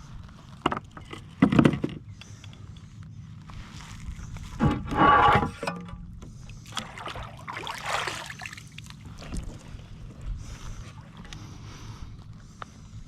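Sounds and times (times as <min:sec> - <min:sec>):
scraping aboard a kayak: 0:03.5 - 0:05.7.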